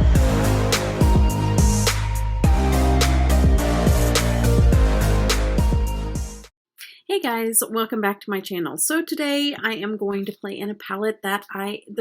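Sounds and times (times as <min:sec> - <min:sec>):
steady drum beat: 0:00.0 - 0:06.4
intro music: 0:00.0 - 0:06.5
sustained bass notes: 0:00.0 - 0:06.5.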